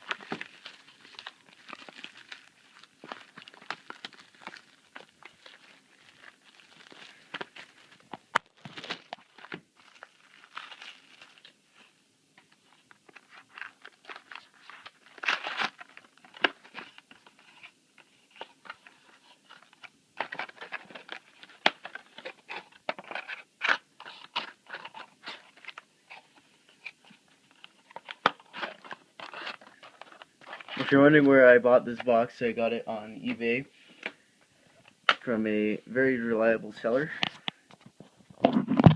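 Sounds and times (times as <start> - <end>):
plastic wrap and foil crinkling: 0.0 - 32.3.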